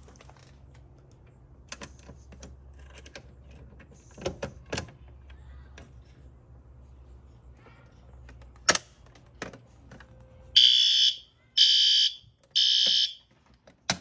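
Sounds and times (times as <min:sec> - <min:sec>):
handling knocks and clicks: 0:12.8 - 0:14.0.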